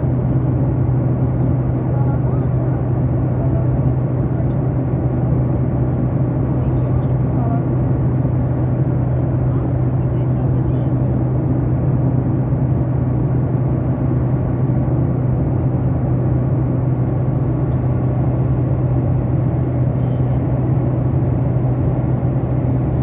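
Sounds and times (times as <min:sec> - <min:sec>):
jet cabin engine drone: 0:00.0 - 0:23.0.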